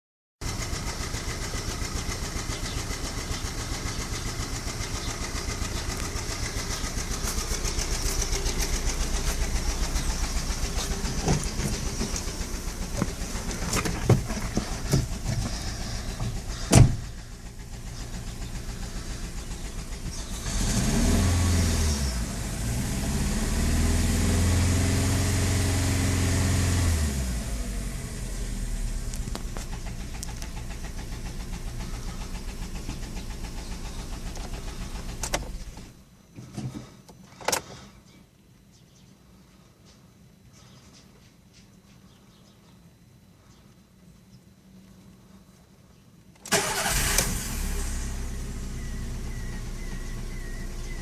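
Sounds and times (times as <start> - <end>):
engine revving: 0.4 - 35.9, 46.5 - 51.0
car engine idling: 0.4 - 36.1, 46.5 - 51.0.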